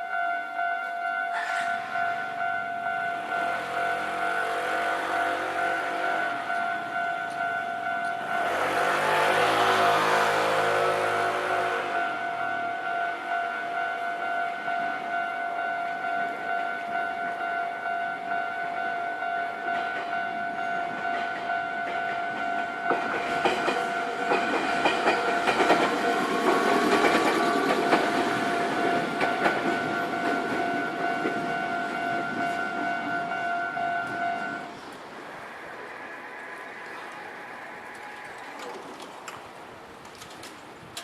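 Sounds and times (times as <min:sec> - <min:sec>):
level-crossing warning bell: 0:00.0 - 0:34.9
background noise: 0:00.0 - 0:41.0
train wheels clattering: 0:20.9 - 0:35.1.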